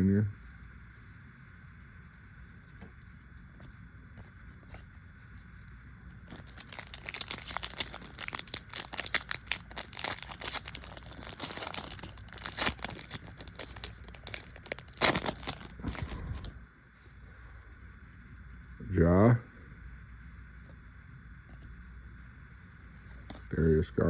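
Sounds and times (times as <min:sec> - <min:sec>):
card pack wrapper crinkling and tearing: 0:06.1 - 0:16.6, 0:23.2 - 0:23.5.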